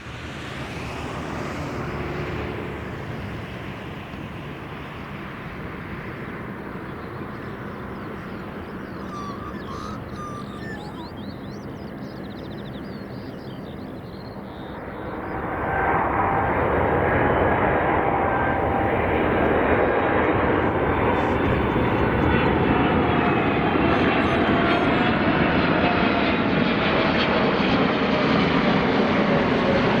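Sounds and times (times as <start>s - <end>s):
jet engines rushing: 0.0s - 30.0s
whining tone: 8.2s - 11.5s.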